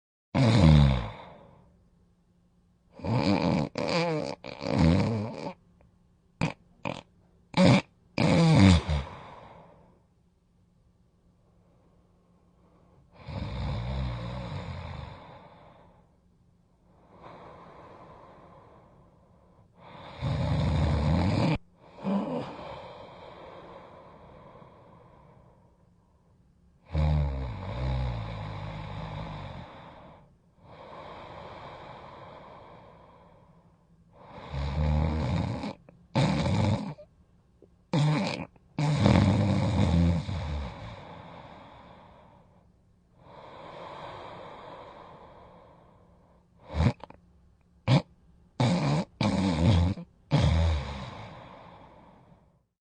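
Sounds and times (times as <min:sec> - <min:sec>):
person snoring: 0:00.4 - 0:01.6, 0:02.9 - 0:05.6, 0:06.4 - 0:09.9, 0:13.1 - 0:16.1, 0:16.9 - 0:25.8, 0:26.8 - 0:37.1, 0:37.9 - 0:42.6, 0:43.2 - 0:47.2, 0:47.8 - 0:52.6
short snort: 0:06.4 - 0:09.4, 0:37.9 - 0:41.2, 0:46.6 - 0:47.2, 0:47.9 - 0:51.9
breathy breath: 0:08.8 - 0:10.1, 0:16.8 - 0:20.4, 0:21.8 - 0:26.4, 0:28.5 - 0:34.7, 0:40.2 - 0:47.2, 0:50.3 - 0:52.7.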